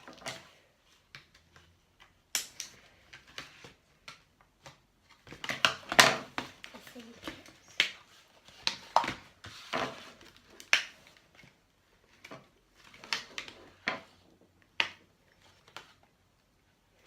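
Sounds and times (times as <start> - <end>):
plastic clicks and snaps: 2.0 - 6.0.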